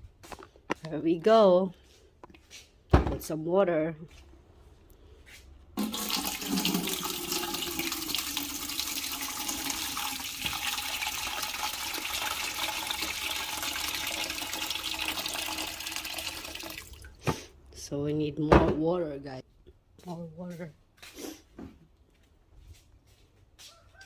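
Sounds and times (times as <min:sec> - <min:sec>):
tap water filling a pot: 0:05.8 - 0:17.2.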